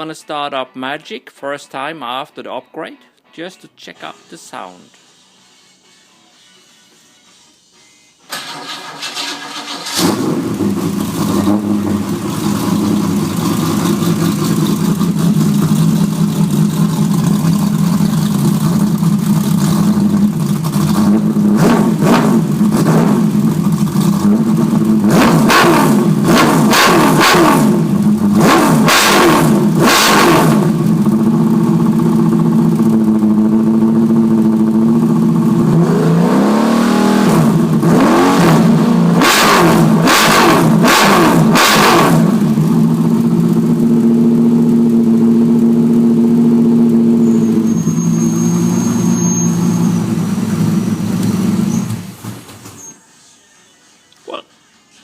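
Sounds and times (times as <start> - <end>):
engine starting: 8.3 - 11.4
engine idling: 8.4 - 35.8, 39.8 - 52.5
engine revving: 8.4 - 52.4.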